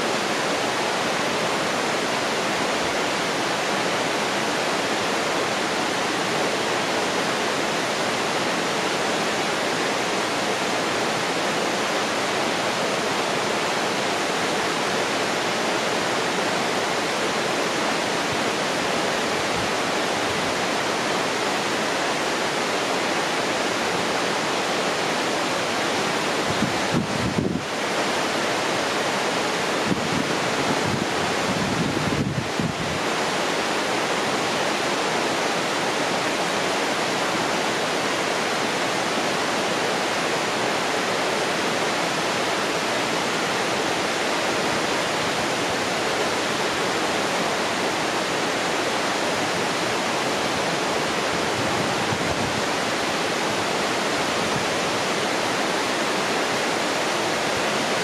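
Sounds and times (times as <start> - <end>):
wind buffeting microphone: 26.5 - 27.7, 29.9 - 33.0.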